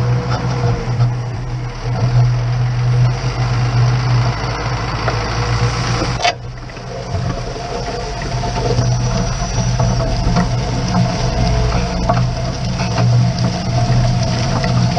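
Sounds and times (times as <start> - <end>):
tractor diesel engine running: 0.0 - 14.9.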